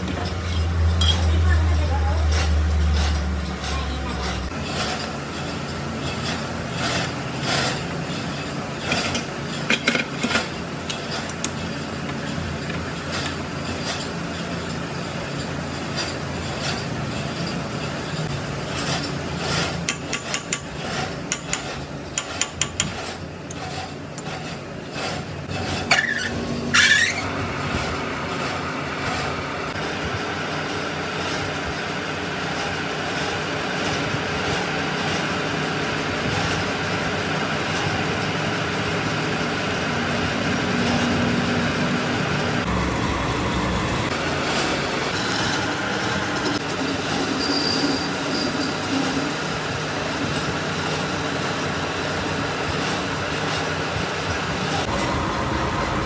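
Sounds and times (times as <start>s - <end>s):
brief squeal: 25.9s - 27.3s, 47.2s - 49.1s.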